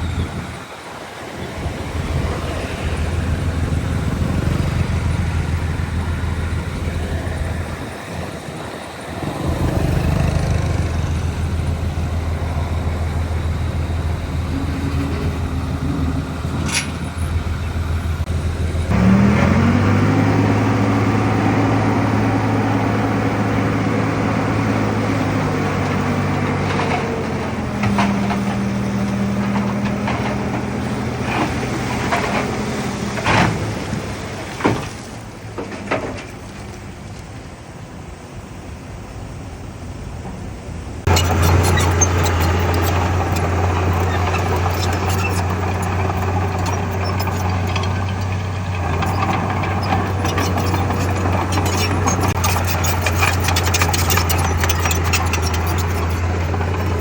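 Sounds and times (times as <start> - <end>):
heavy diesel engine running: 0.0 - 34.8, 39.6 - 57.0.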